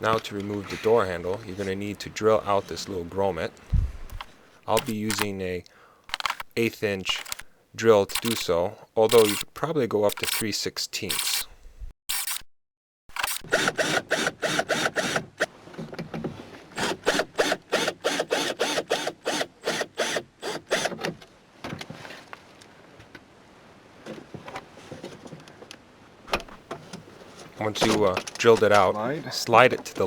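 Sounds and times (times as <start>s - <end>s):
drill motor pulsing: 13.1s - 15.5s, 16.8s - 20.9s.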